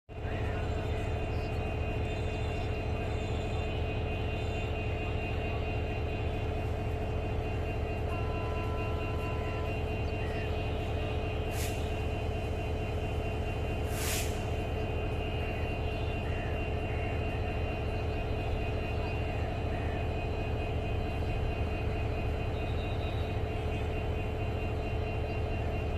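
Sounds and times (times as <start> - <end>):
diesel locomotive engine running: 0.1 - 25.9
brake air hiss: 11.5 - 12.1, 13.8 - 14.6.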